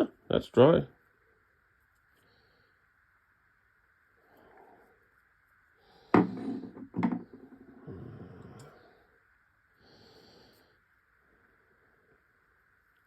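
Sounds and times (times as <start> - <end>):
screwdrivers knocking on hard surface: 6.2 - 7.6.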